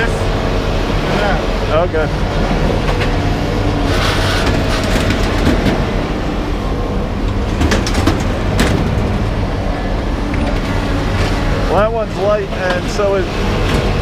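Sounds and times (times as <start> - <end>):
heavy engine rumbling: 0.0 - 14.0.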